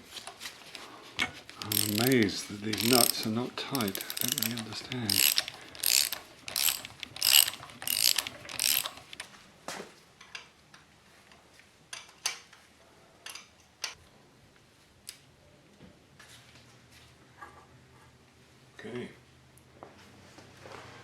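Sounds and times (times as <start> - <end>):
socket ratchet clicking: 1.5 - 9.2.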